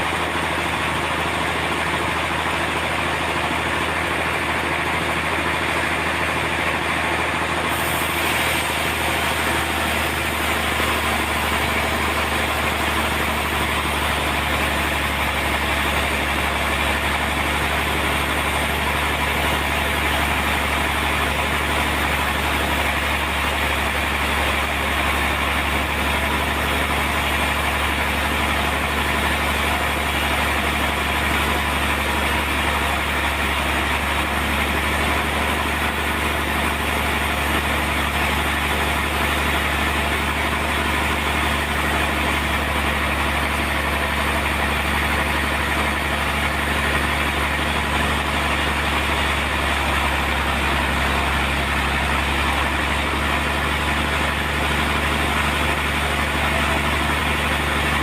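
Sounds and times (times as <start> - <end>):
low engine hum: 0.0 - 58.0
high-pitched machinery noise: 7.7 - 28.6.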